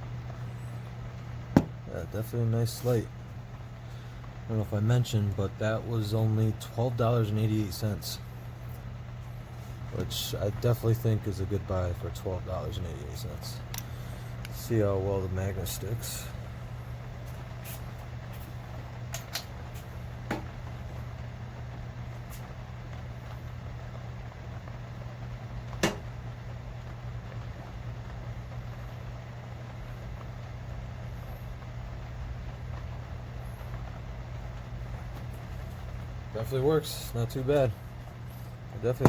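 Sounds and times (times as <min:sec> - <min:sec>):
low background hum: 0:00.0 - 0:39.0.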